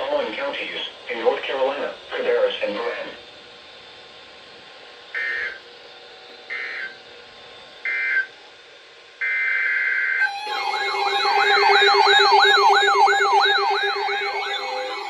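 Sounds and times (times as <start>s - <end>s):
steady tone: 10.2s - 15.0s
warbling siren-like alert tone: 10.2s - 15.0s.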